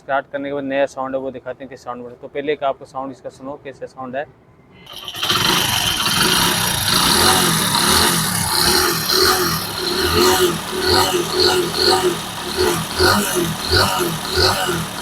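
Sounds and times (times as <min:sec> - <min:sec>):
motorcycle engine running roughly: 0:04.9 - 0:15.0.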